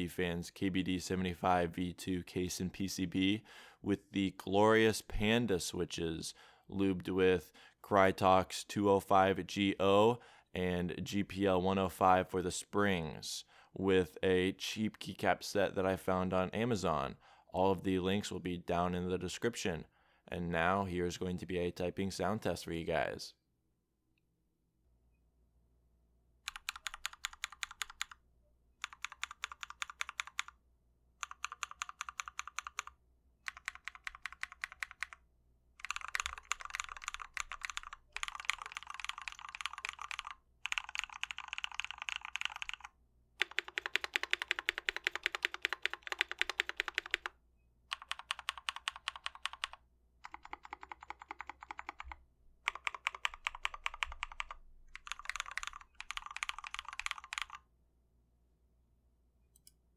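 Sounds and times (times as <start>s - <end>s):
mechanical keyboard typing: 26.5s - 28.2s, 28.8s - 30.6s, 31.2s - 32.9s, 33.5s - 35.2s, 35.8s - 47.3s, 47.9s - 57.6s.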